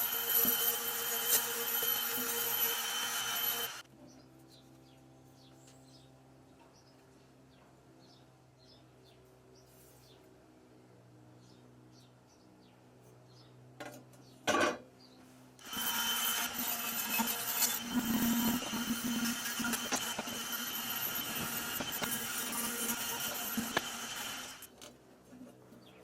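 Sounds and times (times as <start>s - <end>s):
power tool grinding: 0.0s - 3.8s, 15.6s - 24.7s.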